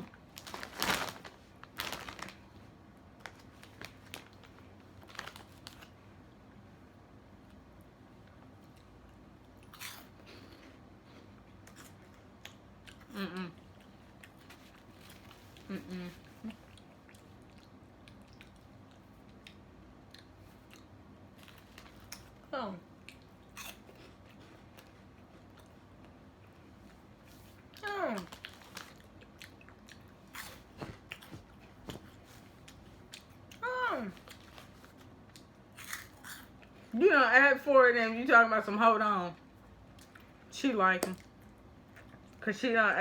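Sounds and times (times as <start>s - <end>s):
snack bag crinkling: 0.0s - 6.0s, 27.4s - 33.3s
faint chewing: 8.2s - 36.9s, 39.9s - 42.4s.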